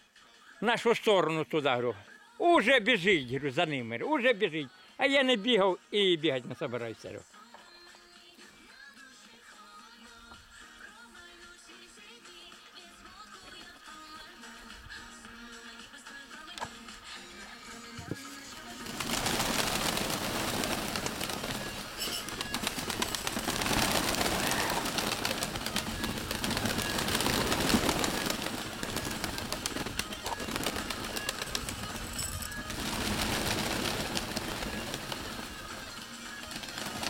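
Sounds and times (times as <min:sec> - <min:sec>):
pigeons cooing: 0:18.7 - 0:37.0
steady rustling noise: 0:18.7 - 0:37.0.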